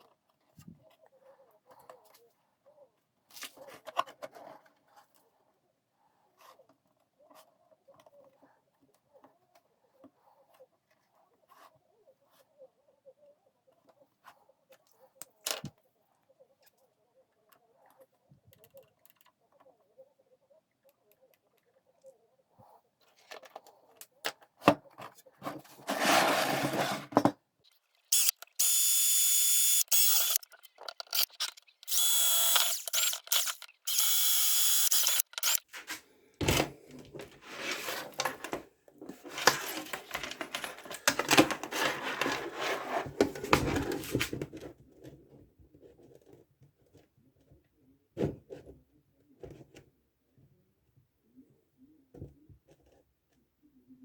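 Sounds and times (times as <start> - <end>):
scraping and rattling work noise: 25.5 - 27.3
power drill whining: 28.2 - 30.4, 31.2 - 35.6.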